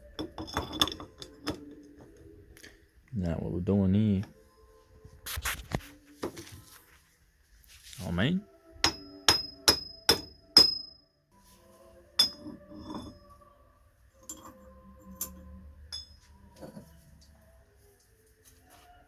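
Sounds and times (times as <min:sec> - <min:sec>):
hammer ringing on steel pipe: 0:08.8 - 0:11.0.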